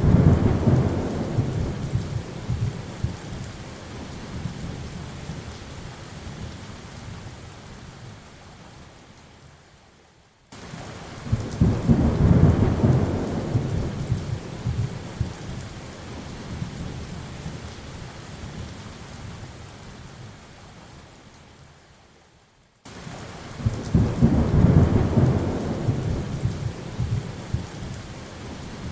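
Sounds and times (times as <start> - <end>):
rolling thunder: 0.0 - 3.2, 11.3 - 15.4, 23.6 - 27.8
rain falling: 0.0 - 28.9.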